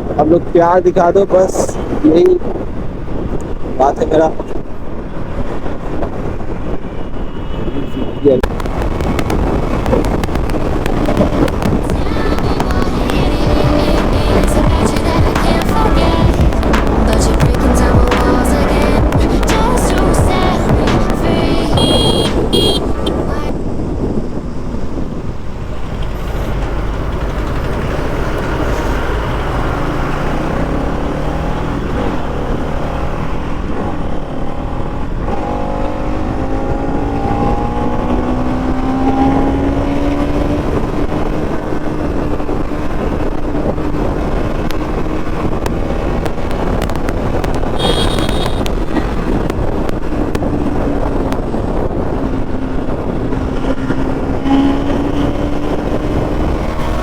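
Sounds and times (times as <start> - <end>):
wind rush: 0.0 - 57.0
motorcycle engine at high speed: 8.4 - 57.0
short high-pitched tone: 20.5 - 23.5.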